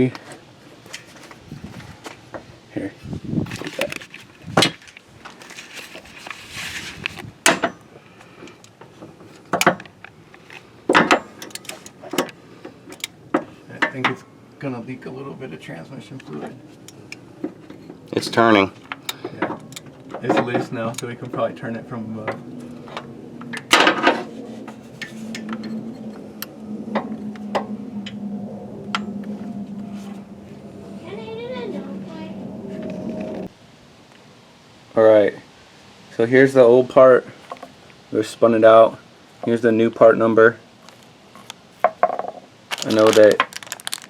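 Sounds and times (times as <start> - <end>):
short scraping rustle: 3.4 - 7.3
steady low hum: 10.1 - 33.6.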